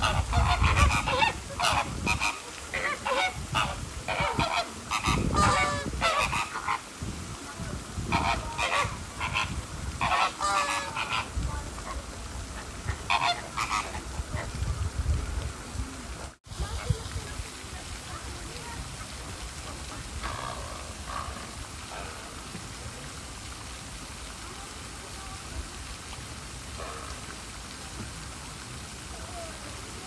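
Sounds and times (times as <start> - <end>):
flamingos honking: 0.0 - 17.1, 18.1 - 22.6, 26.6 - 27.4.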